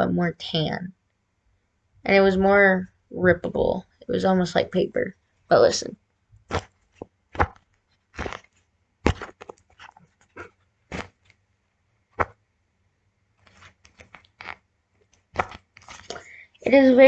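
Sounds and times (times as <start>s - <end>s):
cardboard toy crackling: 6.5s - 11.4s, 13.4s - 16.3s.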